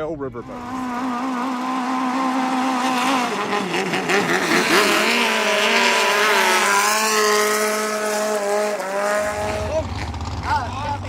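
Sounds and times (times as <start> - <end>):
boat engine running at high revs: 0.4 - 11.0.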